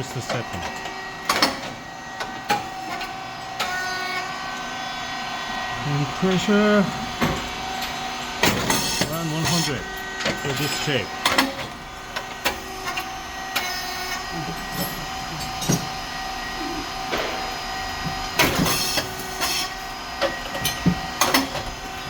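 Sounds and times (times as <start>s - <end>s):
machine motor humming: 0.0s - 22.0s.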